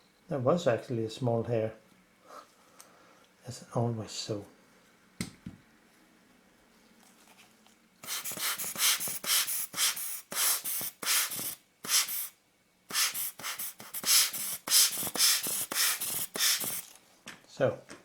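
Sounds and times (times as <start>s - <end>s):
air blower puffs: 8.0s - 16.9s.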